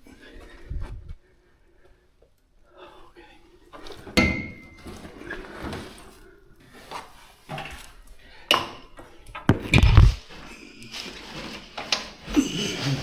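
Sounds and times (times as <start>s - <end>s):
hard objects knocking and clattering: 9.5s - 10.2s
low thump: 9.5s - 10.2s.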